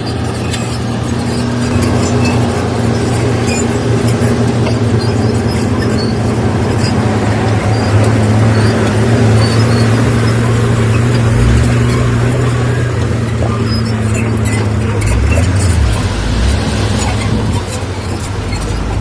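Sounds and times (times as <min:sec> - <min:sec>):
heavy diesel engine humming: 0:00.0 - 0:19.0.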